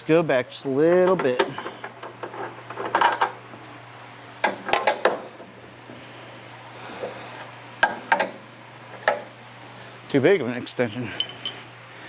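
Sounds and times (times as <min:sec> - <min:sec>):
steady low hum: 0:00.0 - 0:12.0
metal hand tools clinking: 0:11.1 - 0:11.8.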